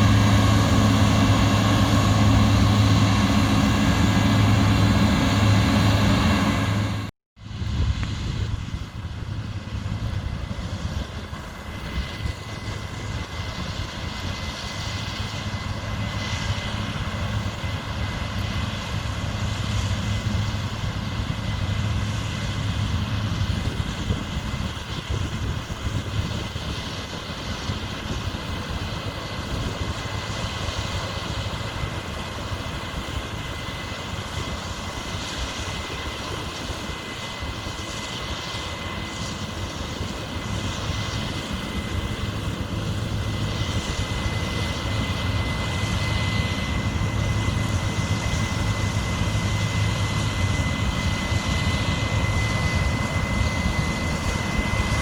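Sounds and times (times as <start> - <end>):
high machine whine: 0.0 - 8.1
diesel engine rumble: 0.0 - 10.4.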